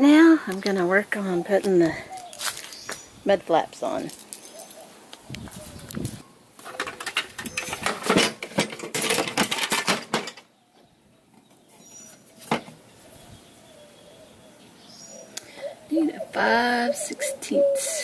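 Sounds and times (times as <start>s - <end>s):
hand tools clattering: 6.6s - 10.5s.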